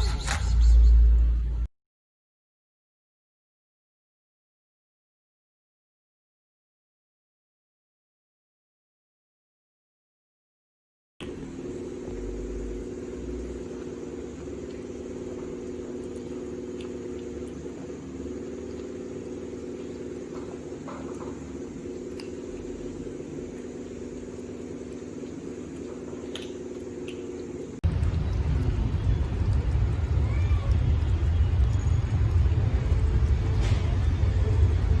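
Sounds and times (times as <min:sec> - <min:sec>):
motor humming: 0:11.2 - 0:35.0.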